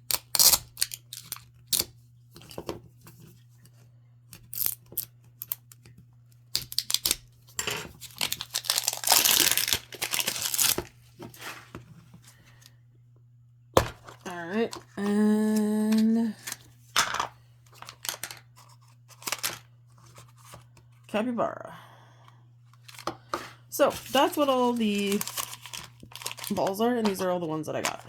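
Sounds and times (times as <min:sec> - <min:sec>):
packaging tearing and crinkling: 0:00.1 - 0:01.9, 0:06.6 - 0:07.2, 0:08.0 - 0:10.9, 0:24.0 - 0:26.6.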